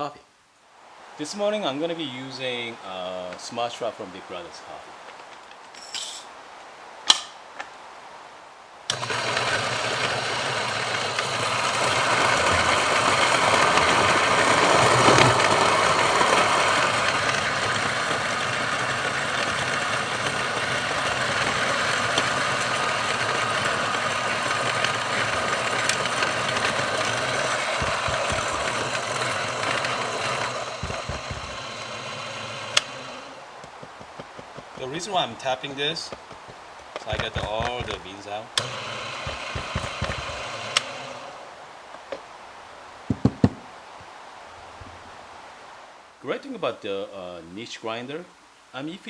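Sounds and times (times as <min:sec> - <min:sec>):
low knocks tapping grinder: 0:08.9 - 0:41.4, 0:43.1 - 0:43.6
coffee grinder grinding beans: 0:08.9 - 0:41.5.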